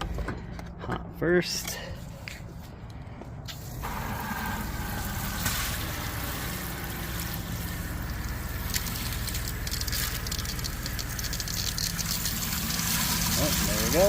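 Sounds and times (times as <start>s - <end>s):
shower water rushing and spitting: 3.6s - 14.0s
water pump humming: 3.8s - 14.0s.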